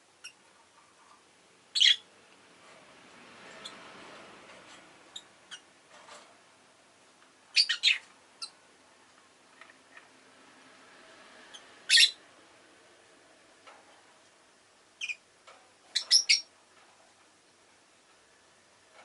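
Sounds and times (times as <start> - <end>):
lovebirds shrill chirps: 1.7 - 2.1, 7.5 - 8.6, 11.5 - 12.2, 15.0 - 15.2, 15.9 - 16.5.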